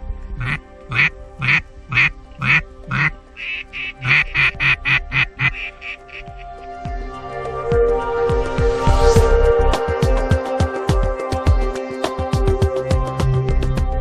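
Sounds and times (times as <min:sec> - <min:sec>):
background music: 0:00.0 - 0:14.0
duck quacking: 0:00.4 - 0:06.4.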